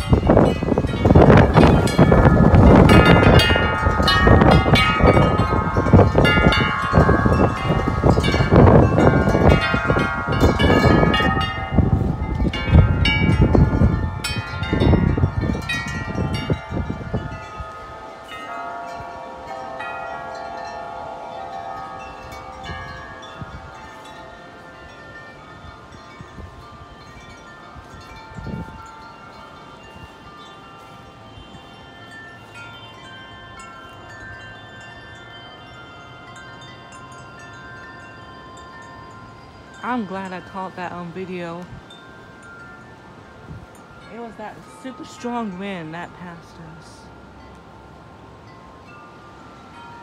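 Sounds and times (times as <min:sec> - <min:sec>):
wind buffeting microphone: 0:00.0 - 0:50.0
wind chimes ringing: 0:00.0 - 0:50.0.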